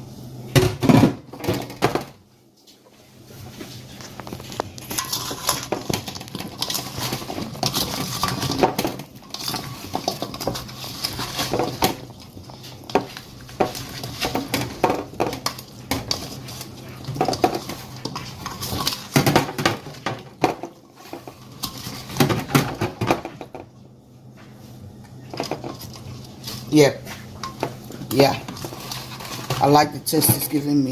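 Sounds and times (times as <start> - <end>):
utensil scraping a bowl: 4.4 - 19.3, 25.2 - 30.5.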